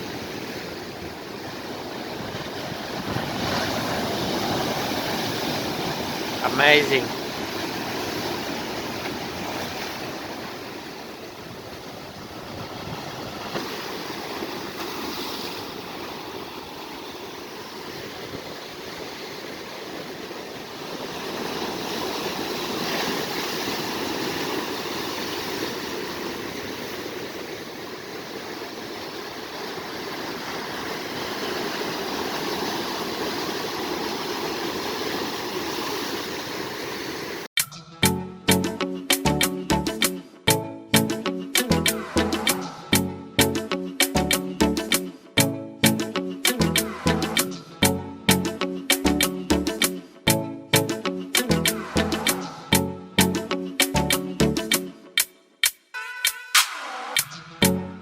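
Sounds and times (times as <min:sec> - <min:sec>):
sea waves washing on shore: 0:00.0 - 0:37.5, 0:51.3 - 0:55.0.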